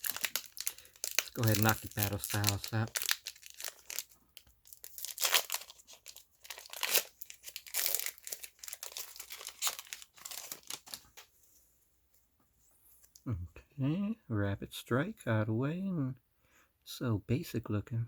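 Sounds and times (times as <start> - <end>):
foil wrapper tearing and crinkling: 0.0 - 11.2.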